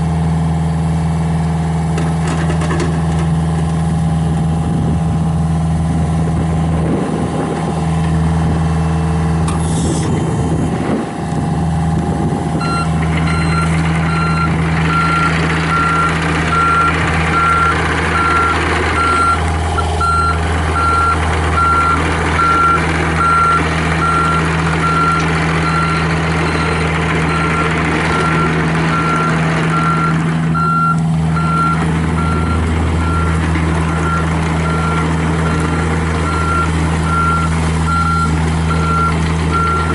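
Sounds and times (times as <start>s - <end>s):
diesel engine running: 0.0s - 39.9s
machine noise: 12.6s - 39.9s
reversing alarm beeping: 12.6s - 39.9s.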